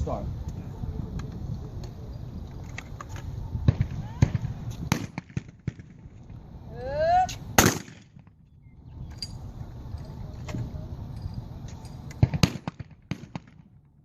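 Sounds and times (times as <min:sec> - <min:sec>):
shotgun shots: 0:03.7 - 0:05.9, 0:07.6 - 0:08.2, 0:12.2 - 0:13.7.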